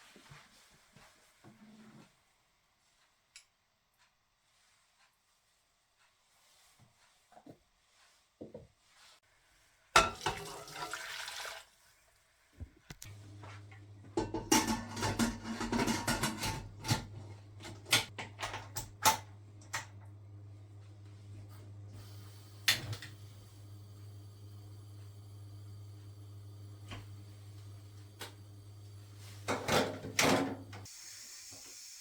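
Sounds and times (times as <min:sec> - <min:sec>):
appliance humming: 0:12.8 - 0:30.9
dishes and utensils clattering: 0:14.2 - 0:17.2, 0:29.5 - 0:30.9.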